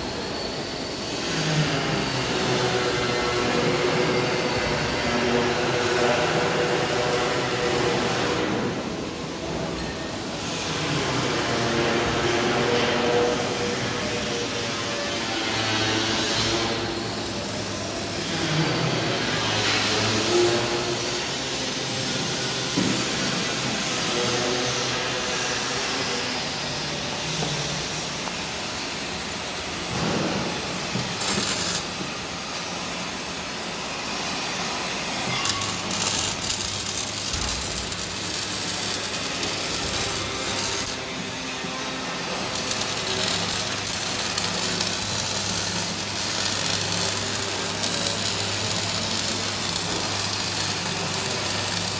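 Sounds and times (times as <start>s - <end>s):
saw cutting through log: 34.9s - 51.9s.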